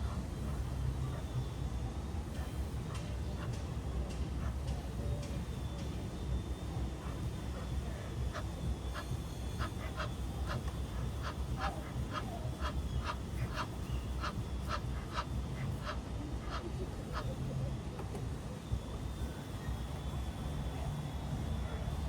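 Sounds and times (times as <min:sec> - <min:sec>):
low background rumble: 0:00.0 - 0:22.0
duck quacking: 0:09.6 - 0:10.6, 0:11.2 - 0:17.2.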